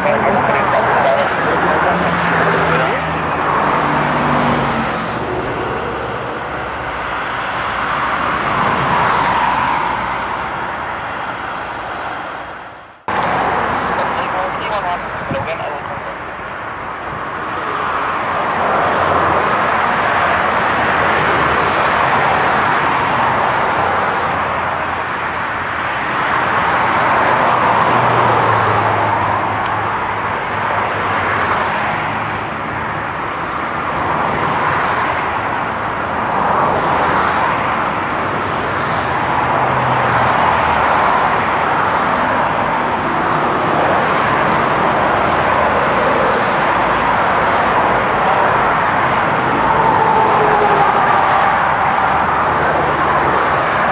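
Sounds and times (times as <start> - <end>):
jet engines roaring: 0.0 - 53.9.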